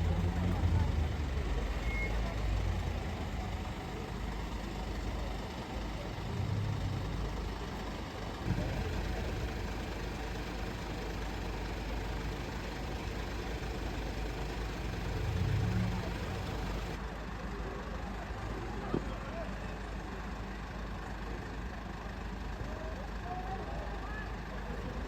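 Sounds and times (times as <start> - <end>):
vehicle engine idling: 0.0 - 25.0.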